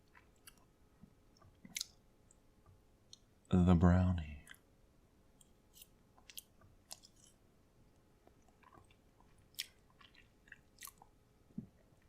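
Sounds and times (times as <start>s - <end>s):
person chewing: 0.0s - 0.7s, 1.3s - 2.0s, 5.4s - 7.4s, 8.2s - 11.1s.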